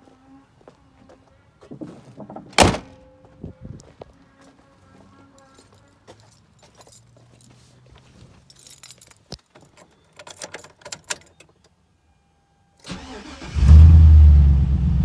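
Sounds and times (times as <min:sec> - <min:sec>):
keys jangling: 0:05.4 - 0:07.7, 0:08.3 - 0:11.5
engine cranking and starting: 0:12.9 - 0:14.2.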